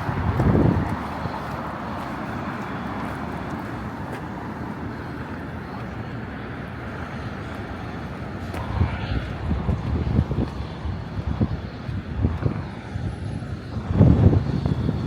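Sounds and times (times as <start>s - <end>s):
traffic hum: 0.0s - 15.0s
low rush: 7.8s - 13.2s.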